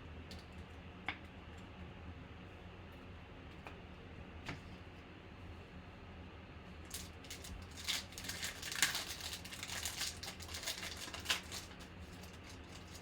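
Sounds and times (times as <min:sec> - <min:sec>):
plastic wrapper crinkling and tearing: 0:06.9 - 0:13.0.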